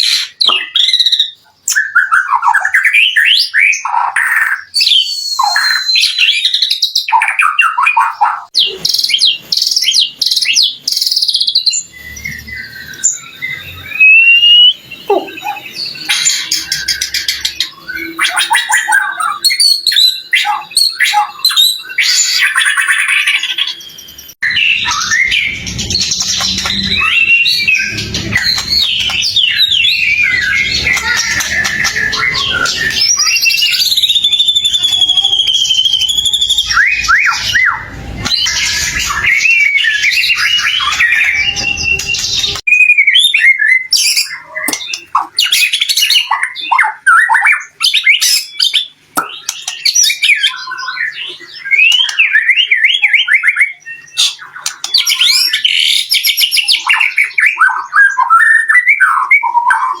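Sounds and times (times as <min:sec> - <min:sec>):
songbird singing: 0:00.0 - 1:00.0.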